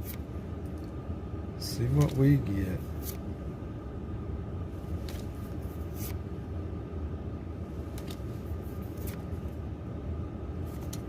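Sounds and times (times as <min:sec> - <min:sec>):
trading cards sliding: 0:00.0 - 0:00.3, 0:01.8 - 0:03.3, 0:04.9 - 0:06.2, 0:07.9 - 0:09.5, 0:10.7 - 0:11.0.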